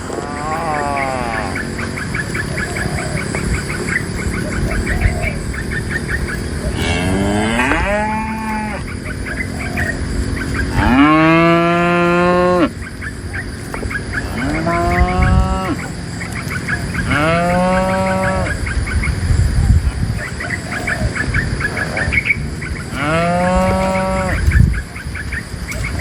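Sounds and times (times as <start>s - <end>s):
cattle mooing: 0.0s - 2.0s, 6.6s - 9.0s, 10.5s - 12.8s, 14.2s - 16.0s, 17.0s - 18.7s, 22.8s - 24.5s.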